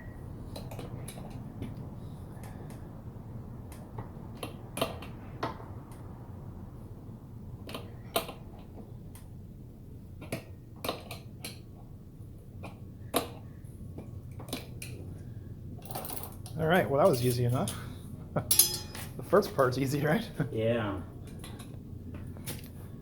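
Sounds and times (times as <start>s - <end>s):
low steady hum: 0.0s - 23.0s
hand tools clicking on metal: 18.5s - 19.2s.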